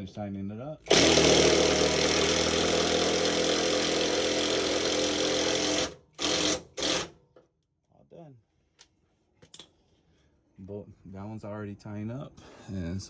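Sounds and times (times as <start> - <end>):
impact wrench running: 0.8 - 7.2.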